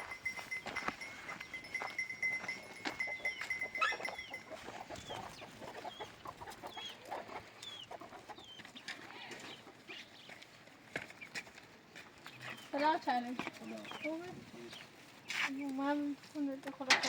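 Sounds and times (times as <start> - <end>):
steady high tone: 0.0 - 4.6.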